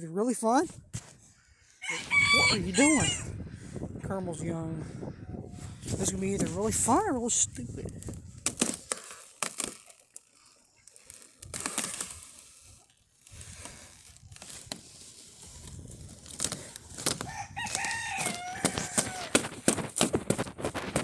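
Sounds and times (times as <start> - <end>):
rooster crowing: 1.8 - 3.4, 17.2 - 19.4.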